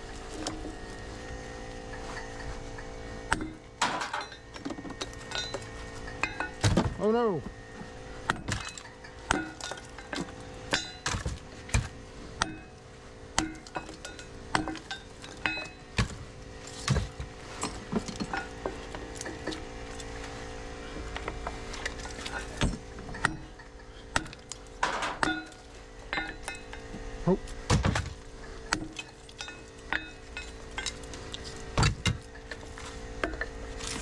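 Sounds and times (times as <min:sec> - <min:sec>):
steady machine hum: 0:00.0 - 0:34.0
knocks and metal clinks: 0:01.8 - 0:07.0, 0:13.4 - 0:16.0, 0:21.3 - 0:27.0, 0:27.8 - 0:33.6.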